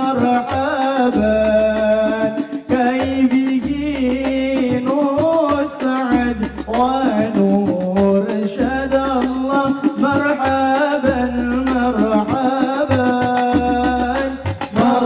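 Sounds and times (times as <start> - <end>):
low bass notes: 1.2 - 2.2, 3.0 - 5.4, 6.1 - 9.6, 10.6 - 12.3.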